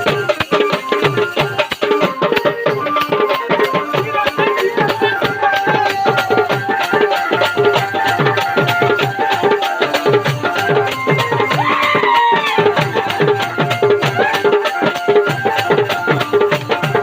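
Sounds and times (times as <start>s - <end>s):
fast hand drumming: 0.0s - 17.0s.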